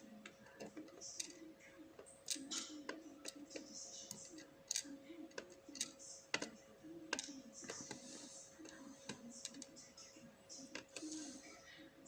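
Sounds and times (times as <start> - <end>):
faint steady hum: 0.0 - 12.0
small metal parts clicking: 0.6 - 1.4, 2.2 - 6.5, 7.1 - 8.0, 9.4 - 9.7.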